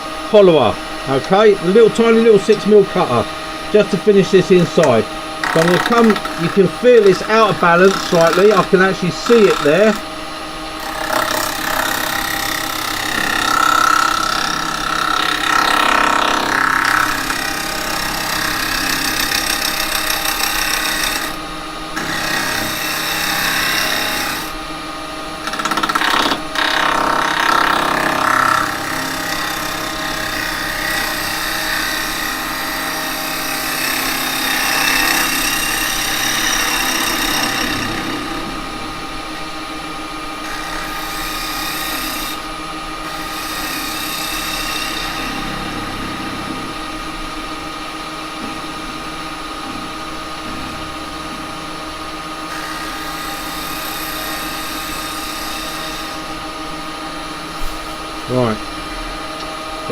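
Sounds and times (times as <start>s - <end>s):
cutter scraping wood: 0.0s - 24.6s, 25.4s - 39.1s
lathe humming: 0.0s - 59.9s.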